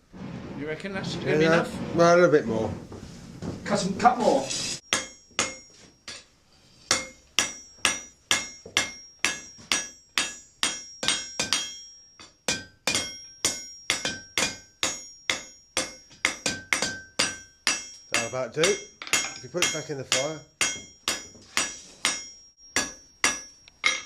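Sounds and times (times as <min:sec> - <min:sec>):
hammer striking iron on anvil: 0:04.8 - 0:06.3, 0:06.9 - 0:24.0.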